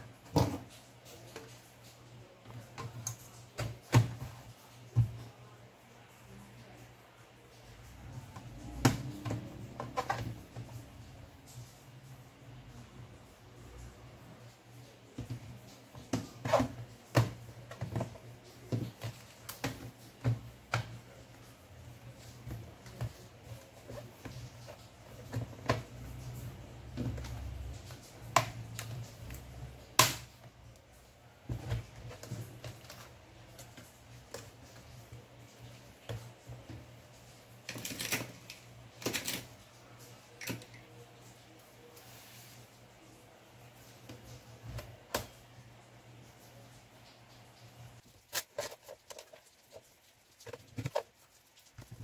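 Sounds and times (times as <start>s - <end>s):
laptop clicking and clatter: 14.8s - 37.0s, 37.6s - 40.8s, 48.0s - 52.0s.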